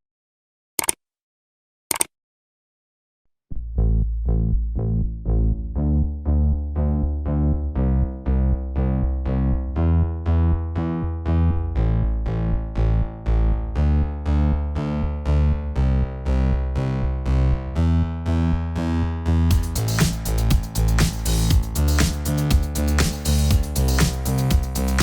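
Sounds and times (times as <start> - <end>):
bass line: 3.5 - 25.0
synthesizer keyboard notes: 18.2 - 25.0.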